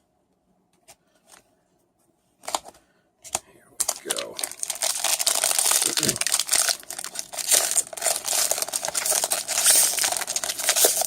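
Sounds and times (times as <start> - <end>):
plastic wrapper crinkling and tearing: 3.8 - 11.0.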